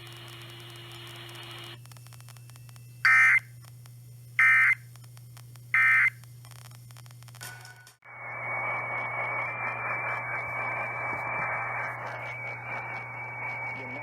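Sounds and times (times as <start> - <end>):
screeching data tones: 0.1 - 3.5, 4.4 - 4.8, 5.8 - 6.2, 8.0 - 14.0
low hum: 8.0 - 14.0
radio hiss: 8.2 - 14.0.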